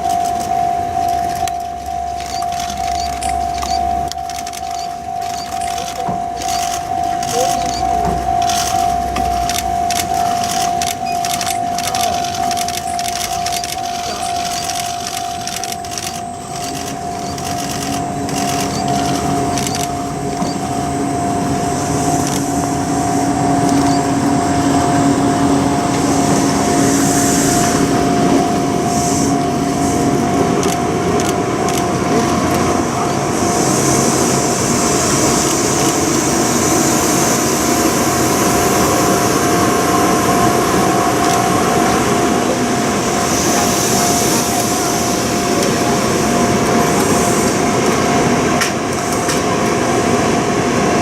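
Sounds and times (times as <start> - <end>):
level crossing alarm steady tone: 0.0 - 48.4
train running slowly past: 0.0 - 51.0
high hiss: 18.5 - 30.5, 32.8 - 50.1.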